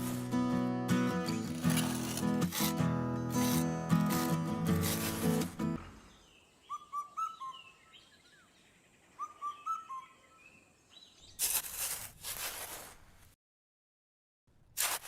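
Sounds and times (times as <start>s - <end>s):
bird whistling call: 6.6s - 8.4s, 9.1s - 11.1s.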